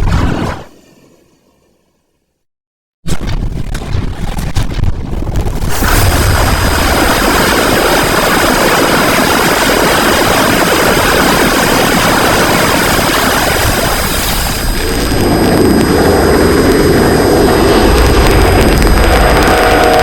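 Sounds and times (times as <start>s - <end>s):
jet engine roar with high whine: 5.7s - 20.0s.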